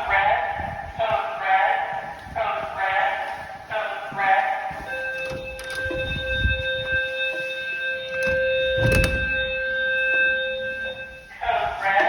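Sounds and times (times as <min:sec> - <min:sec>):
fire alarm steady tone: 0:04.7 - 0:12.0
low rumbling: 0:04.9 - 0:07.2, 0:08.0 - 0:11.6.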